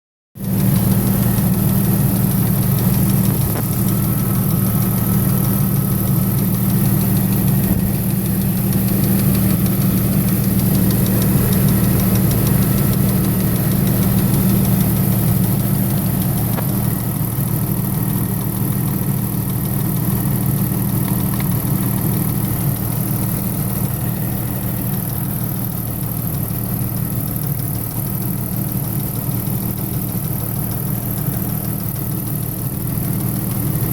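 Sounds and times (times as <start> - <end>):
car engine idling: 0.4 - 33.9
fast light ticking: 0.6 - 16.8.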